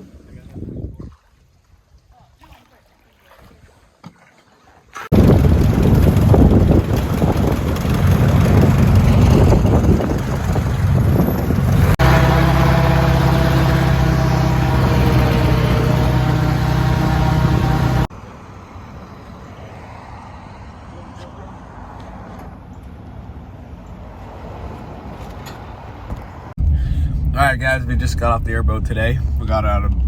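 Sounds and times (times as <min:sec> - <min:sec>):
airboat engine and propeller: 0:05.1 - 0:18.1.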